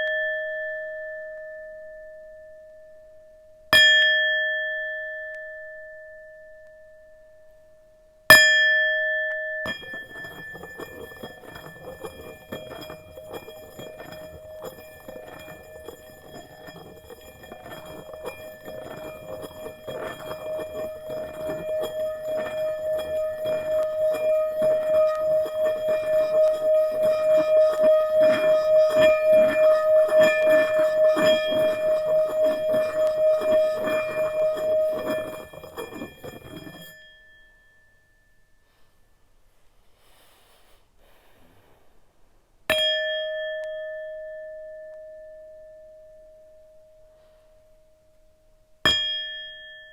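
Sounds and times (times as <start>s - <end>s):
singing bowl humming: 0.0s - 38.5s, 42.7s - 49.9s
mallet scraping bowl rim: 9.7s - 37.2s.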